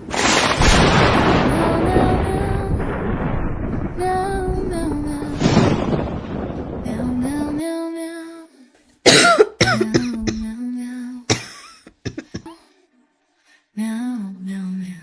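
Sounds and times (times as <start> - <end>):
woman coughing: 9.1 - 10.5, 11.3 - 12.6.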